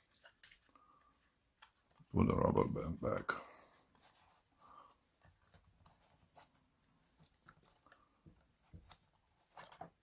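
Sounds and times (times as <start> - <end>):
faint clicks and light knocks: 4.8 - 10.0.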